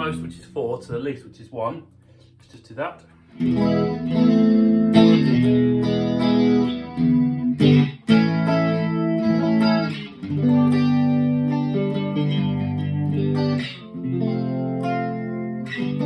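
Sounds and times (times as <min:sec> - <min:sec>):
electric guitar chords with chorus: 0:03.1 - 0:16.0.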